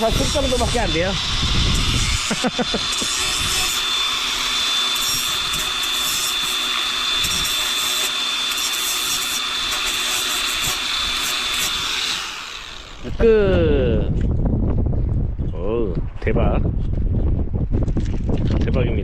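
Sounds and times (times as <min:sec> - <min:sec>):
angle grinder cutting: 0:00.0 - 0:13.4.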